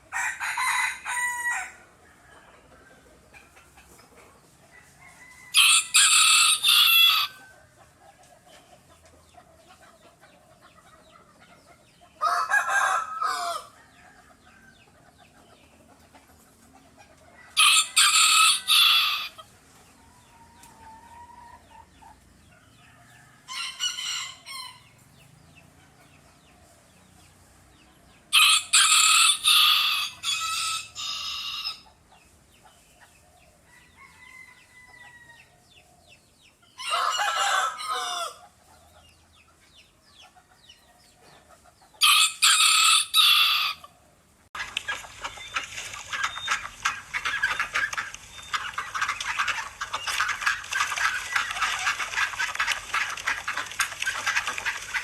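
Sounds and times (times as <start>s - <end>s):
rooster crowing: 0.1s - 2.3s, 5.0s - 7.4s, 12.2s - 14.4s, 17.6s - 19.4s, 36.8s - 38.4s, 42.0s - 43.9s.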